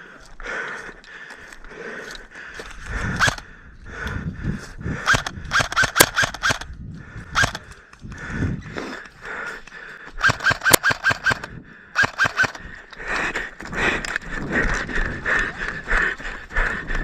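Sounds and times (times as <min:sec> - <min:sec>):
airsoft gun shots: 0:03.2 - 0:03.4, 0:05.1 - 0:06.7, 0:07.4 - 0:07.6, 0:10.2 - 0:12.6.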